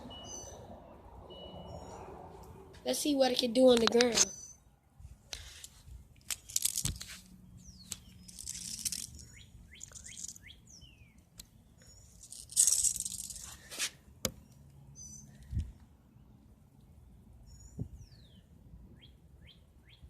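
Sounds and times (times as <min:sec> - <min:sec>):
small birds chirping: 0:00.0 - 0:02.1, 0:02.9 - 0:04.8, 0:06.3 - 0:13.7, 0:14.3 - 0:20.0
scraping or rustling noise: 0:05.3 - 0:10.4, 0:12.1 - 0:14.0.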